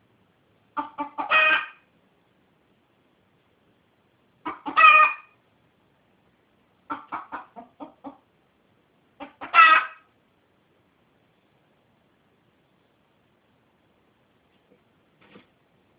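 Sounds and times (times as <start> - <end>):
rooster calling: 0.8 - 1.8, 4.5 - 5.4, 9.3 - 10.1
rooster clucking: 0.8 - 1.8, 4.4 - 5.4, 6.9 - 8.3, 9.2 - 10.1.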